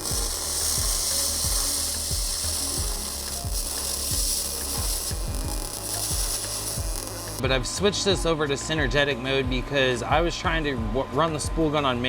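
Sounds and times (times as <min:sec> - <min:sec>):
welding arc hissing and crackling: 0:00.0 - 0:07.5.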